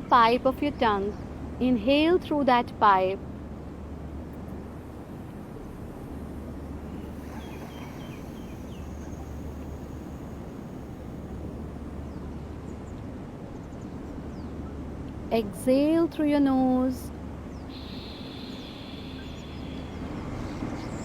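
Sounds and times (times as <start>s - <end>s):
even hiss: 5.3s - 12.1s, 17.7s - 21.0s
bird chirps: 6.9s - 10.5s, 17.6s - 21.0s.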